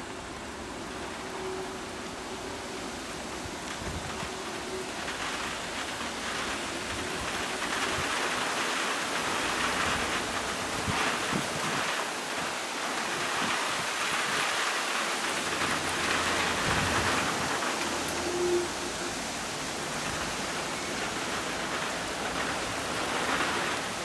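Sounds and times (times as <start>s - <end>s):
rain falling: 0.0s - 24.0s.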